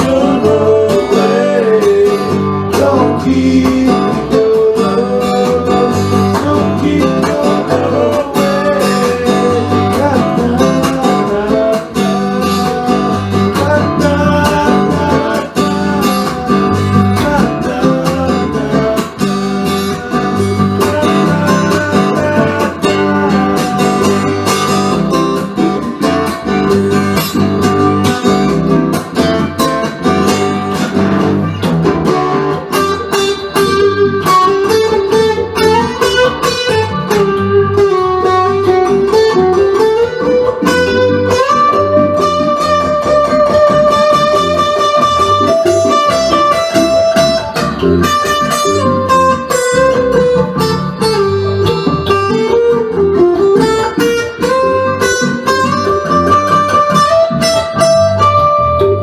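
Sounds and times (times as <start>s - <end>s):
bass line: 0.0s - 59.0s
blues guitar: 0.0s - 59.0s.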